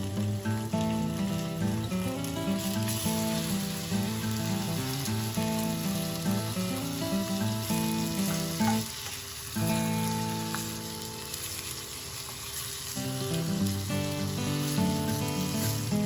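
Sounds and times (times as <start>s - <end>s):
food sizzling in hot oil: 0.0s - 16.0s.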